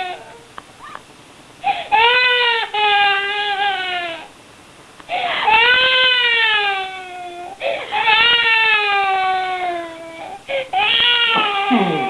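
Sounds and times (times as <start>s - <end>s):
baby crying: 1.7s - 4.3s, 5.1s - 12.0s
baby sharp breath in: 5.1s - 5.6s.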